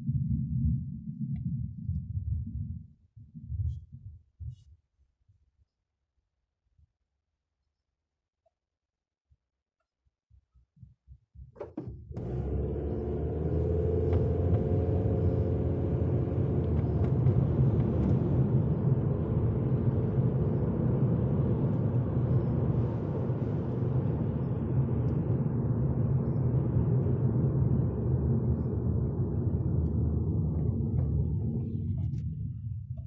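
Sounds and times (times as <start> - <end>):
car engine and road rumble: 11.6 - 33.0.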